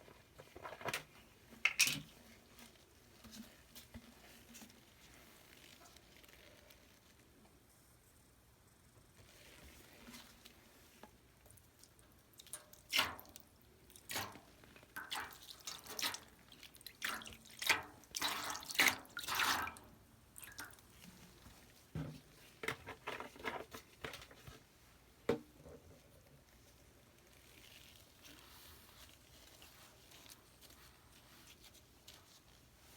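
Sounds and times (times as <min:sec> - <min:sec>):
water dripping and splashing: 0:11.5 - 0:21.2.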